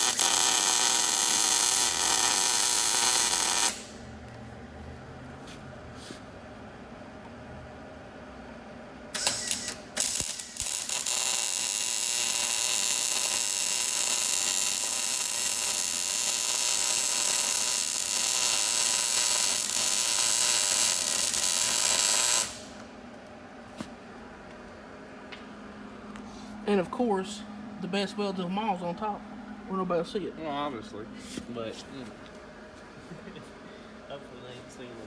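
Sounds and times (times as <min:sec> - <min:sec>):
arc welding: 0:00.0 - 0:04.1, 0:09.1 - 0:22.9.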